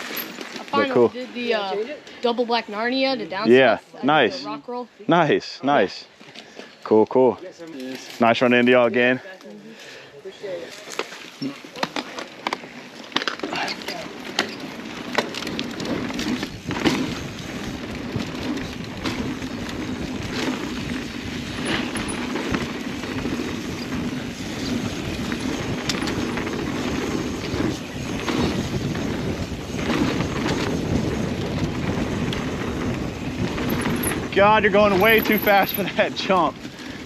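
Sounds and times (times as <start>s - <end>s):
bike clicks and rattles: 0.0s - 2.3s, 6.2s - 9.1s, 10.5s - 37.0s
wind: 0.0s - 37.0s
bike tyres rumbling on dirt: 10.4s - 37.0s.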